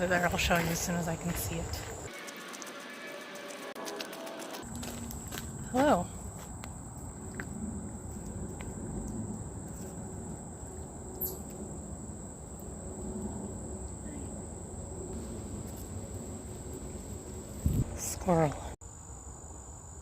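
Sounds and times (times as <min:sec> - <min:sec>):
insects trilling: 0:04.6 - 0:20.0.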